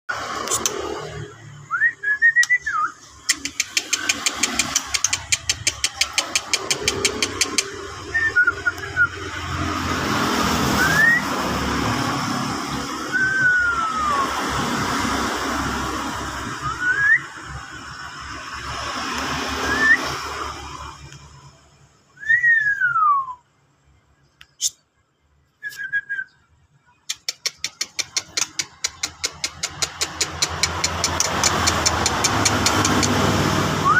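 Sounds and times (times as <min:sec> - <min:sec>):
bird singing whistles: 0:01.7 - 0:03.0, 0:07.4 - 0:09.3, 0:10.8 - 0:11.4, 0:13.0 - 0:14.3, 0:16.5 - 0:17.5, 0:19.6 - 0:20.1, 0:22.2 - 0:23.4, 0:25.6 - 0:26.6
bird rattling ticks: 0:03.3 - 0:07.7, 0:27.1 - 0:33.3.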